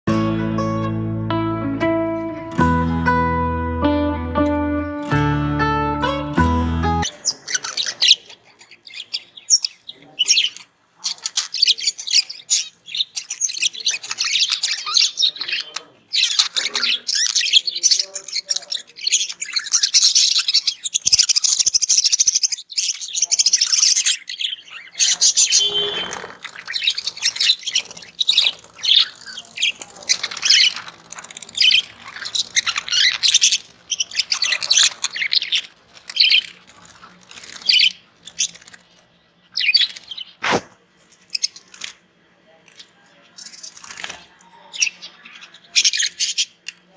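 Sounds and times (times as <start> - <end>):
budgerigars chattering and chirping: 7.0 - 40.6, 41.2 - 42.0, 42.7 - 46.9.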